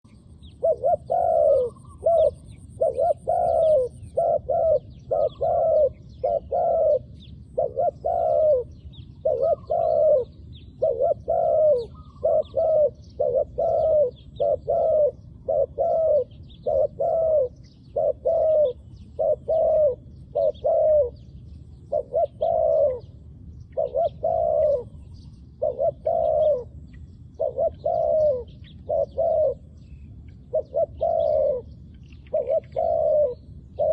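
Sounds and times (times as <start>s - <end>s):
dove cooing: 0.1s - 33.9s.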